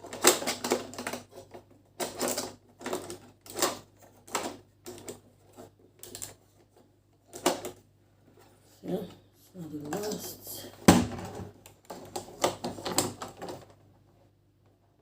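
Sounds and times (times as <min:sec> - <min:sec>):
plastic and metal parts rattling: 0:00.0 - 0:07.8, 0:11.0 - 0:13.9.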